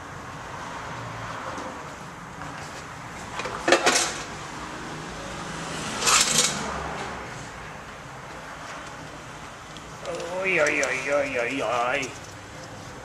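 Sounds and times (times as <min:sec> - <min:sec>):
metal tools clattering and scraping: 0:03.4 - 0:04.3, 0:06.0 - 0:06.6.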